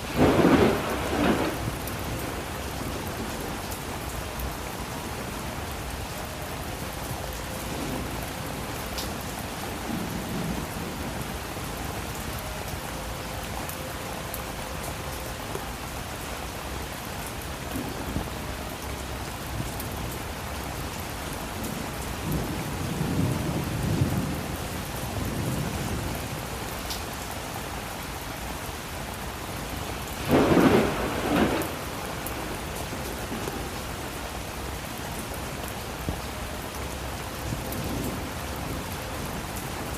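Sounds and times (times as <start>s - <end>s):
thunder rumbling: 0.0s - 5.4s, 7.7s - 12.2s, 21.6s - 26.5s, 29.7s - 36.2s
steady rain: 0.0s - 39.9s
sharp thunder clap: 0.1s - 1.6s, 30.2s - 31.8s.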